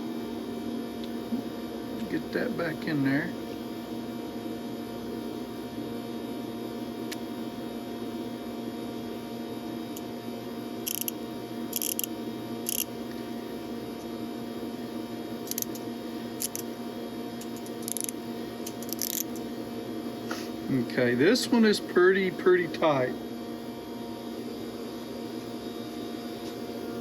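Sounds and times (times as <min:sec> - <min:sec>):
space heater humming: 0:00.0 - 0:27.0
small metal parts clicking: 0:10.9 - 0:11.1, 0:11.8 - 0:12.1, 0:12.7 - 0:12.9, 0:15.5 - 0:15.8, 0:16.4 - 0:16.6, 0:17.4 - 0:19.4.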